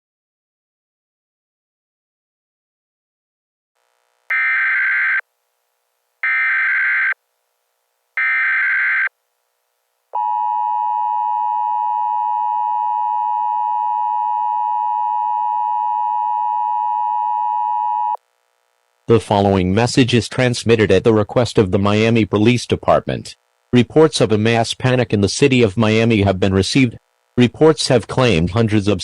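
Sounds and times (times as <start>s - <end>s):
digital header data bursts: 4.3s - 5.2s
two-tone attention signal: 4.3s - 5.2s.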